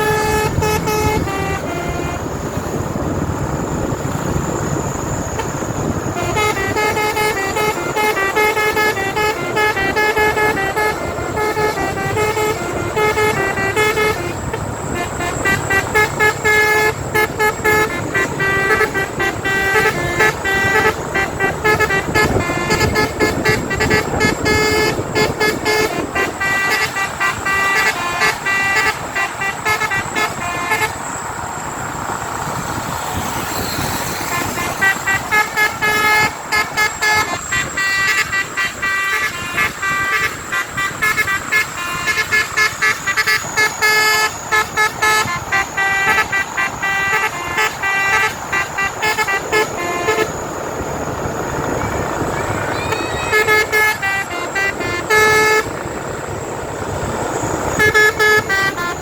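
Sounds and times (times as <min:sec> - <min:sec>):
multi-tone horn playing a tune: 0:00.0 - 0:31.2, 0:33.1 - 0:59.0.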